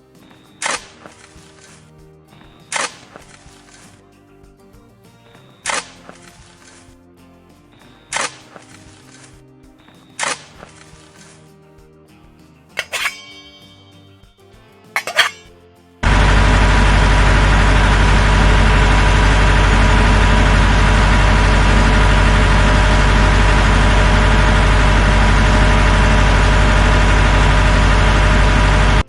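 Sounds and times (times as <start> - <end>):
engine running steadily: 16.0 - 29.0.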